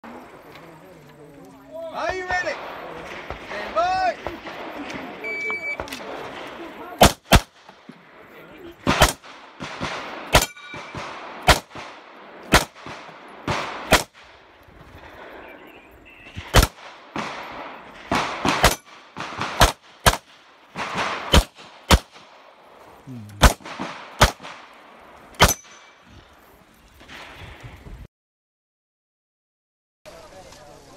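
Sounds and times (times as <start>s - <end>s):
pistol shots: 2.1s - 7.9s, 8.8s - 14.4s, 16.3s - 22.5s, 23.3s - 26.0s.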